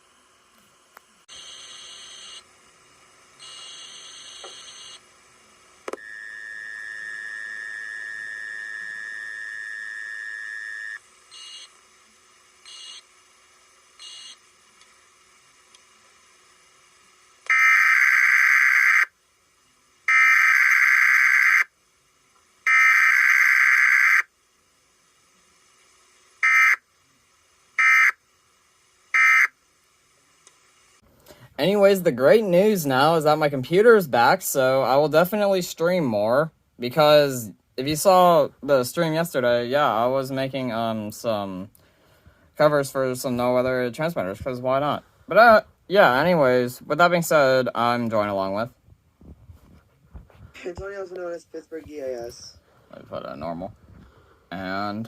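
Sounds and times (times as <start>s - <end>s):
steady electronic tone: 6.0s - 11.5s
screeching digital data bursts: 6.0s - 11.6s, 22.7s - 24.3s.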